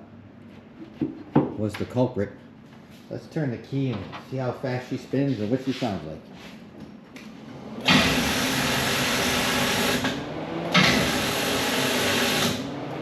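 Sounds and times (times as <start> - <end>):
engine cranking on starter: 7.8 - 12.7.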